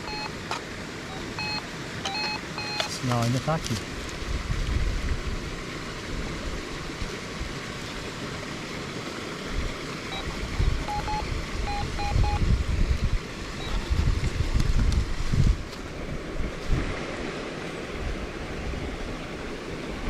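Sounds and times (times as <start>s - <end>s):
metal detector short beeps: 0.0s - 0.4s, 1.1s - 3.1s, 10.1s - 12.4s
creek and waterfall rushing: 0.0s - 14.5s, 15.7s - 20.0s
wind gusts on microphone: 3.6s - 7.7s, 9.5s - 20.0s.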